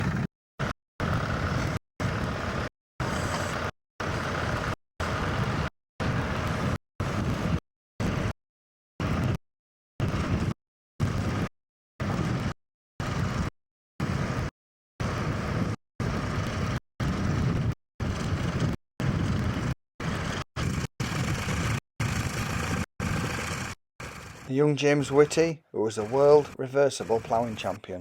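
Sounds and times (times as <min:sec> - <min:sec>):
tractor engine running: 0:00.0 - 0:08.3, 0:15.0 - 0:28.0.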